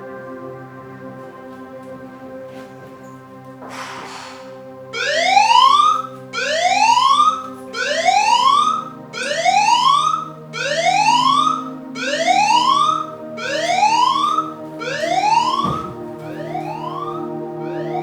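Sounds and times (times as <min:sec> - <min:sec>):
whooping siren alarm: 0:04.9 - 0:18.0.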